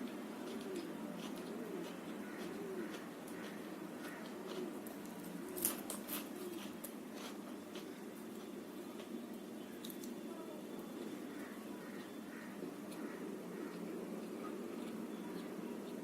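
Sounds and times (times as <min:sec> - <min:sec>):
pigeon cooing: 0:00.4 - 0:06.8, 0:11.3 - 0:16.0.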